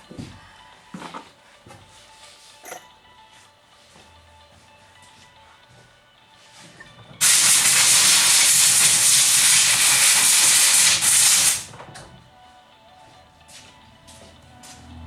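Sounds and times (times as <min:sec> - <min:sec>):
pressurised air jet hissing: 0:07.2 - 0:11.7.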